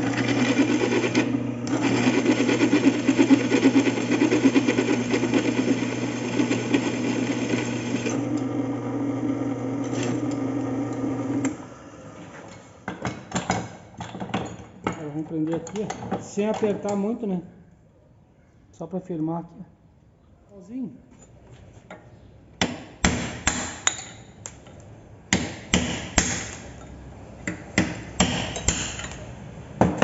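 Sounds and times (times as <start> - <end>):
electric drill drilling metal: 0.0 - 9.0.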